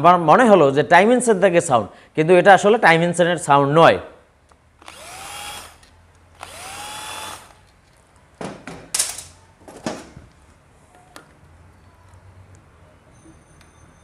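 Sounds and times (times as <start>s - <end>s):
power drill-driver spinning: 4.8s - 7.7s.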